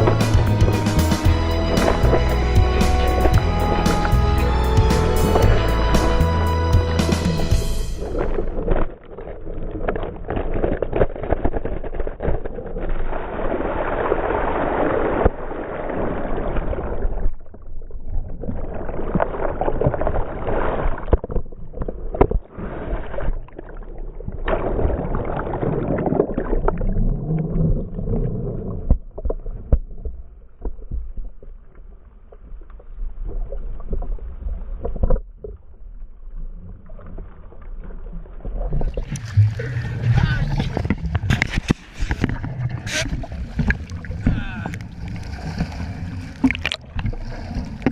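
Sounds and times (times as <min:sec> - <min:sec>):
deep rumble on microphone: 0:00.0 - 0:09.0, 0:37.4 - 0:47.9
wind and water rushing: 0:00.0 - 0:09.0, 0:38.7 - 0:47.9.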